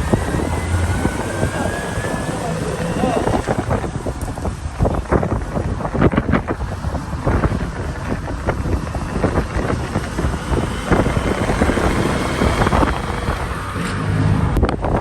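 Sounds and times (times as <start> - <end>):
motorcycle running: 0.0 - 15.0
wind buffeting microphone: 0.0 - 15.0.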